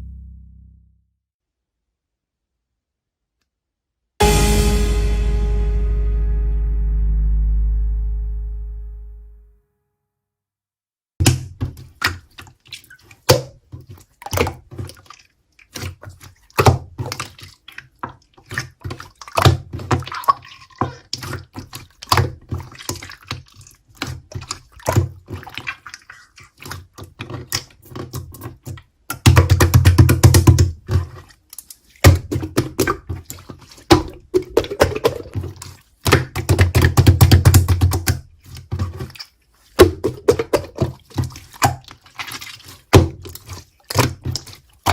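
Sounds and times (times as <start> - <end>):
slime squishing wet clicks: 35.0 - 44.9.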